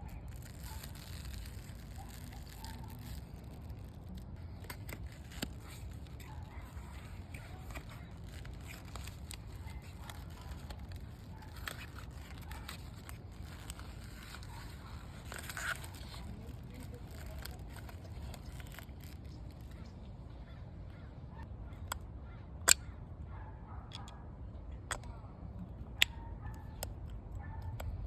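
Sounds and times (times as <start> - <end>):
paper and cardboard crinkling: 0.0 - 19.9.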